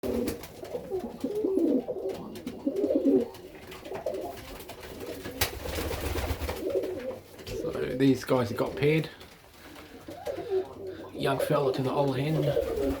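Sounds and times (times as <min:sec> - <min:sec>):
pigeons cooing: 0:00.0 - 0:13.0.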